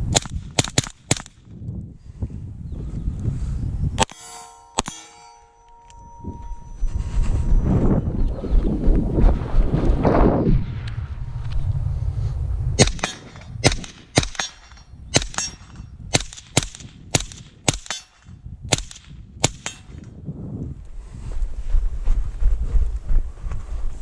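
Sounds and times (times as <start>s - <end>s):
wind on microphone: 0.0s - 4.3s, 5.7s - 24.0s
suppressed rifle shots: 0.1s - 1.4s, 12.8s - 19.9s.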